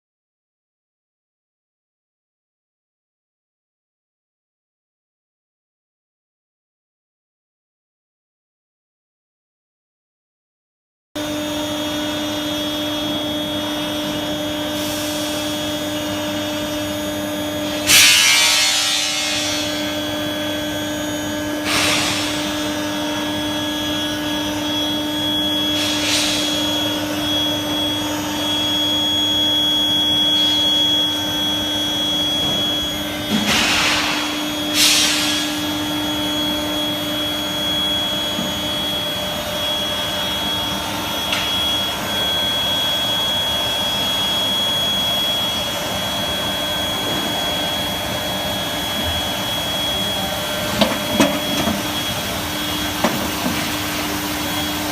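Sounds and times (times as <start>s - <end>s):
furnace drone with whine: 11.2s - 54.9s.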